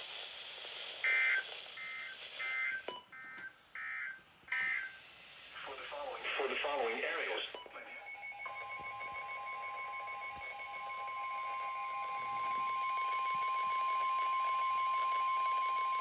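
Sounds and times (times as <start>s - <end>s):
steady alarm tone: 1.0s - 5.3s, 7.8s - 16.0s.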